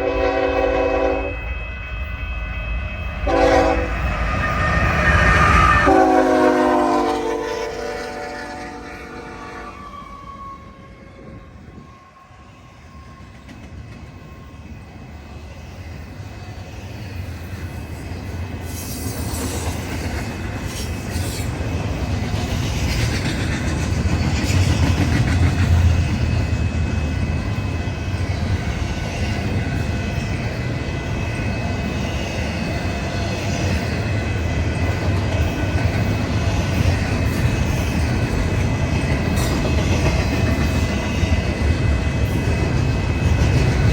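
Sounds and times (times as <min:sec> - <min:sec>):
faint steady squeal: 0:00.0 - 0:06.2, 0:09.5 - 0:19.6
train rumbling: 0:00.0 - 0:43.9
wheels clattering on rails: 0:17.6 - 0:43.9.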